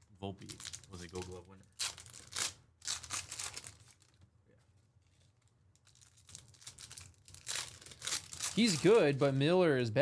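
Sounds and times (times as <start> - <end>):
plastic wrapping tearing and crinkling: 0.4 - 4.2, 5.2 - 9.4.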